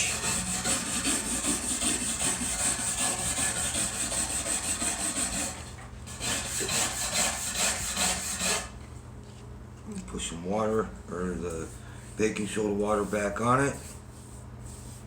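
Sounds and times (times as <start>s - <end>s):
wire brush scrubbing wood: 0.0s - 8.7s, 12.3s - 15.0s.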